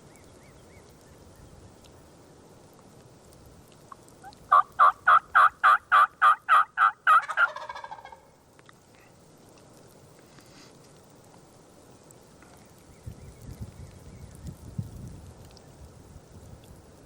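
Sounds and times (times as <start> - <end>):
turkey yelping: 4.5 - 8.2.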